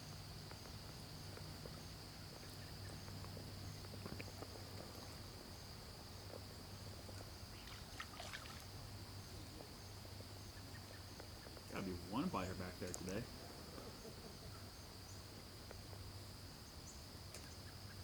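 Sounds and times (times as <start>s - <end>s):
splashy rattle: 7.6s - 8.7s.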